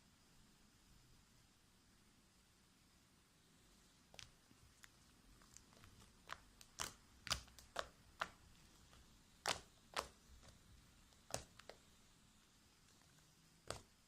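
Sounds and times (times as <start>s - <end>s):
slime being kneaded by hand: 3.7s - 14.0s
sharp wet pops of slime: 5.5s - 11.9s, 13.6s - 14.0s.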